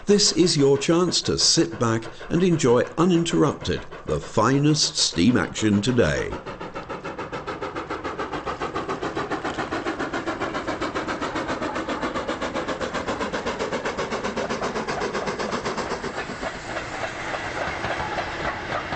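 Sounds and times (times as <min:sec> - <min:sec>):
steam locomotive exhaust beats: 0:00.0 - 0:18.9.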